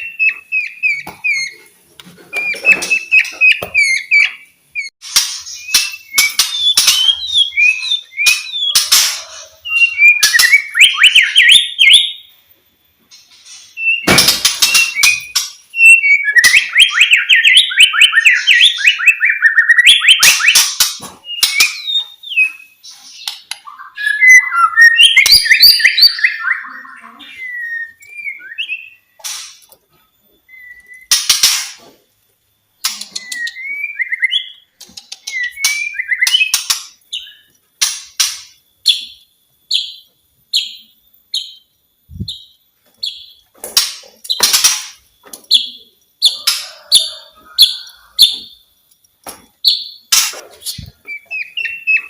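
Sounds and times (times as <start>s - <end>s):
bird singing whistled phrases: 23.6s - 29.0s, 30.5s - 31.1s, 33.1s - 34.6s, 35.3s - 36.6s, 50.8s - 52.0s.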